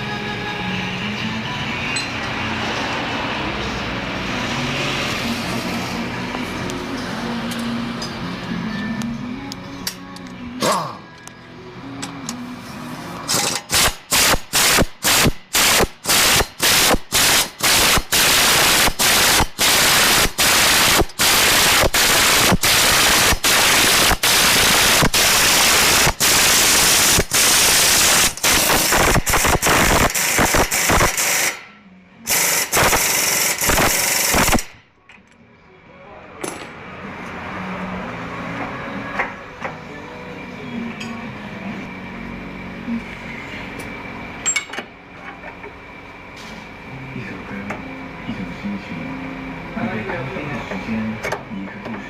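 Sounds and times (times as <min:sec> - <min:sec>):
pneumatic tool bursts: 0:13.3 - 0:31.7, 0:32.3 - 0:34.8.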